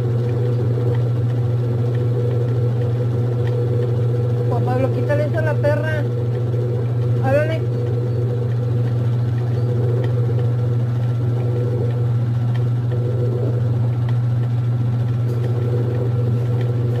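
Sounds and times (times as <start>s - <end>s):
washing machine spinning: 0.0s - 17.0s.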